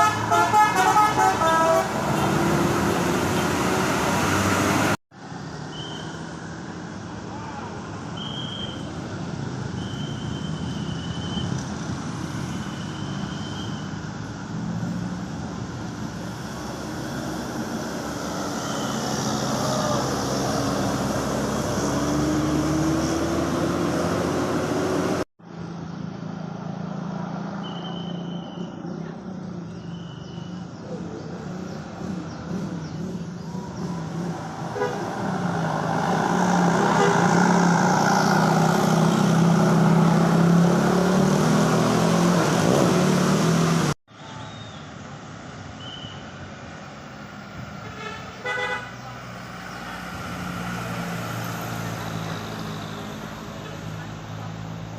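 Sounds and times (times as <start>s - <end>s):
bus musical horns: 0.0s - 2.7s, 34.7s - 35.1s, 36.7s - 37.6s, 47.8s - 49.0s
engine noise: 0.0s - 6.5s, 8.6s - 30.0s, 30.6s - 44.0s, 46.4s - 54.9s
traffic noise: 0.0s - 54.9s.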